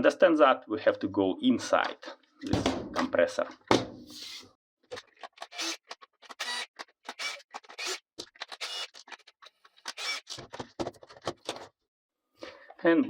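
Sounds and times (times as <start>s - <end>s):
driver bit scraping and clicking screws: 5.0s - 11.6s.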